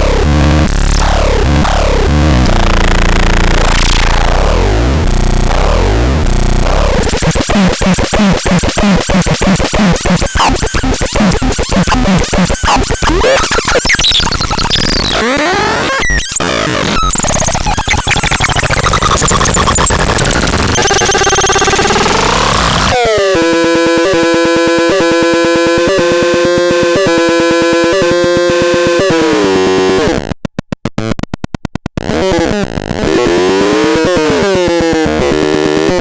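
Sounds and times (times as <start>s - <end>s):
electronic noise music: 0.0s - 30.1s.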